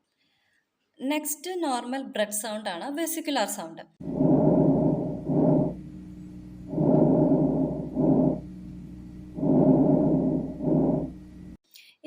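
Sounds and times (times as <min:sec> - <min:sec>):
soft breath sounds: 0:06.7 - 0:08.4.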